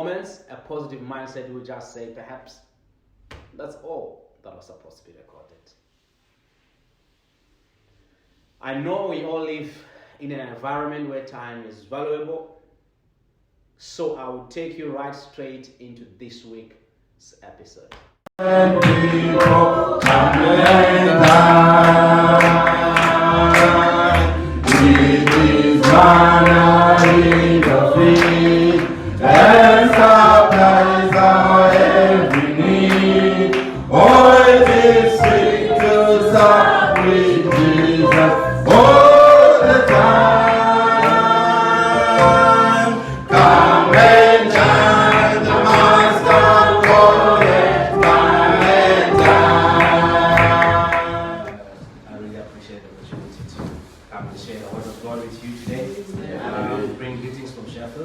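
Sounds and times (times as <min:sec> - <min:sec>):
choir singing gospel song: 0:18.4 - 0:51.8, 0:55.6 - 0:57.4.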